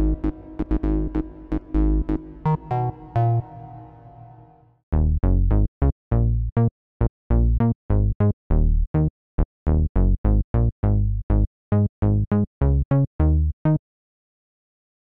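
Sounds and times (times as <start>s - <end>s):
synth bass staccato riff: 0.0s - 4.5s.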